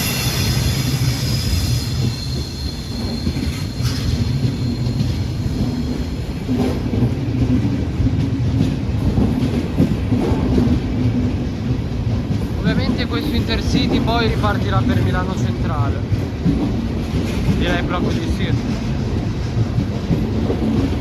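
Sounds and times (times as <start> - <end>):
train brake and wheel squeal: 0.0 - 6.4
train rumbling: 0.0 - 21.0.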